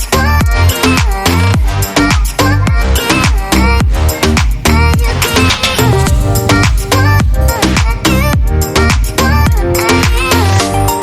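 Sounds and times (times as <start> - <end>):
electronic dance music: 3.5 - 9.1.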